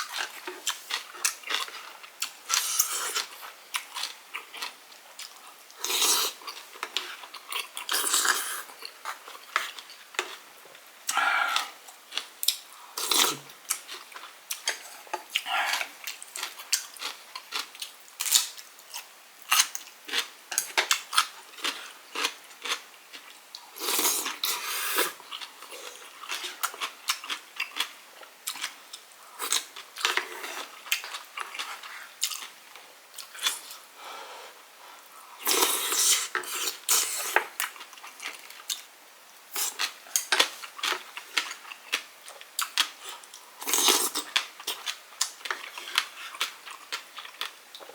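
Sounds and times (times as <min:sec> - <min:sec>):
chewing: 0:11.1 - 0:33.8, 0:39.6 - 0:47.9.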